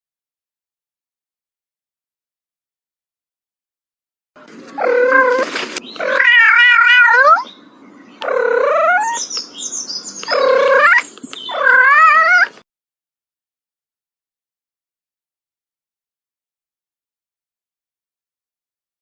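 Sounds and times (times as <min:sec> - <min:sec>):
cat meowing and yowling: 0:04.8 - 0:07.5, 0:08.2 - 0:09.3, 0:10.2 - 0:12.6
cat squealing cry: 0:04.8 - 0:07.5, 0:08.2 - 0:09.3, 0:10.2 - 0:12.6.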